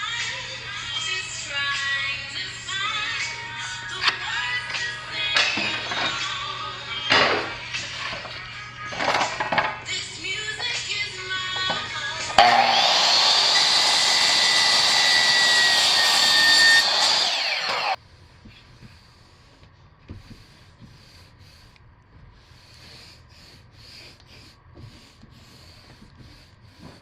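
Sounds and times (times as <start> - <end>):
power tool running: 12.3 - 18.0.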